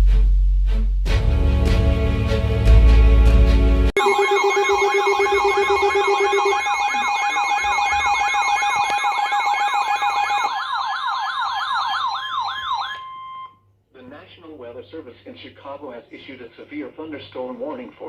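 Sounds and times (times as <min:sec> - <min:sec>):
steady electronic tones: 0:04.0 - 0:10.6
warbling siren-like alert tone: 0:04.0 - 0:13.6.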